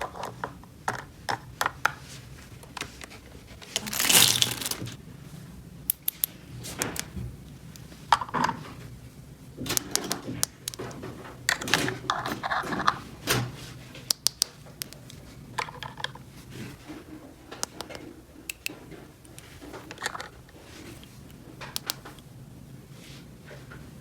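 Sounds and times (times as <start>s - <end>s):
plastic toy pieces clicking: 3.8s - 4.9s.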